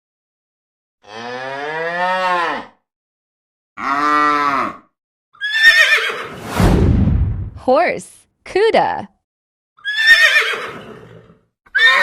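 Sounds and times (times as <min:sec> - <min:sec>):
cow mooing: 0:01.0 - 0:02.7, 0:03.8 - 0:04.9
horse whinnying: 0:05.4 - 0:06.4, 0:09.8 - 0:12.0.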